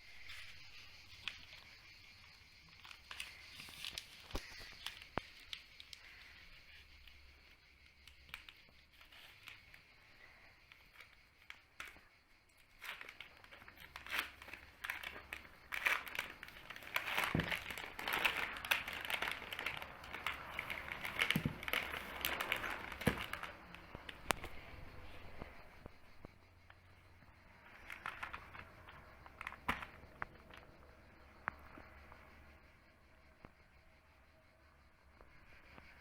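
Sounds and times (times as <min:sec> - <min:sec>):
snack packaging crinkling and tearing: 0:02.7 - 0:06.4, 0:12.7 - 0:24.6.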